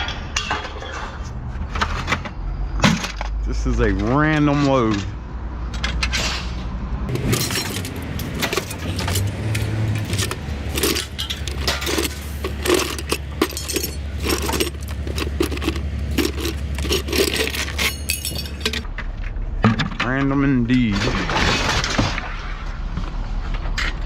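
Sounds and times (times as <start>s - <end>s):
scrap metal clanking: 0.0s - 5.2s, 5.8s - 18.9s, 20.8s - 22.7s
low engine hum: 6.6s - 19.6s.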